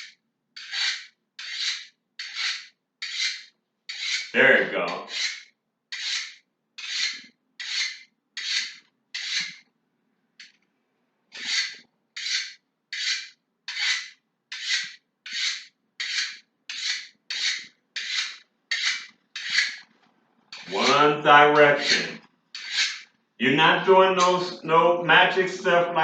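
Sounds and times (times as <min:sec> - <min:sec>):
knife scraping on sharpener: 0:00.0 - 0:04.3, 0:04.9 - 0:09.6, 0:11.3 - 0:19.9, 0:20.5 - 0:23.1.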